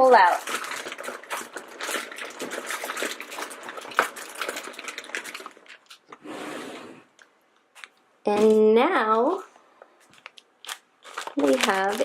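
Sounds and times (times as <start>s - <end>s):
plastic bags crinkling and rustling: 0.0s - 6.2s, 10.0s - 12.0s.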